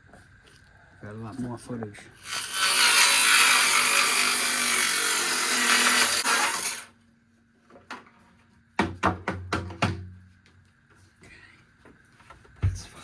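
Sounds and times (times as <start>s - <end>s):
power saw cutting wood: 2.2s - 6.9s.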